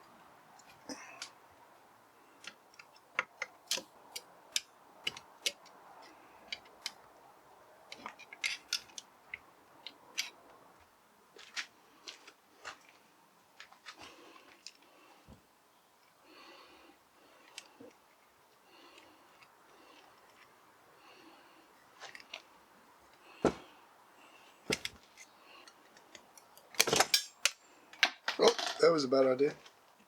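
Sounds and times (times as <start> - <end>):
metallic clicks of hand tools: 2.4 - 7.0.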